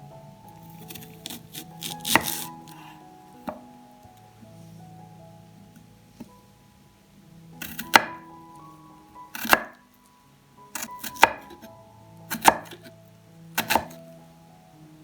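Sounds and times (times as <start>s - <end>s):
soft background music: 0.0s - 15.0s
knife chopping on cutting board: 0.8s - 2.9s, 7.6s - 8.2s, 9.4s - 9.8s, 10.8s - 11.6s, 12.3s - 12.9s, 13.6s - 14.0s.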